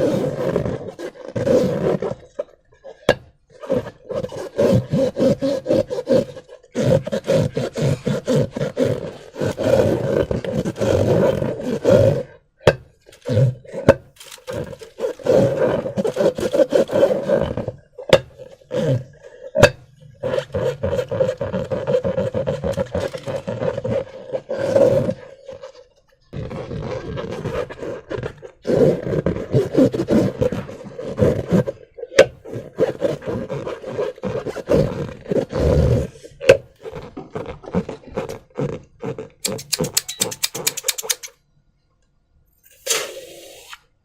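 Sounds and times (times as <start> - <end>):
rubber balloon squeaking: 0.0 - 41.3
sharp clicks: 39.4 - 41.4.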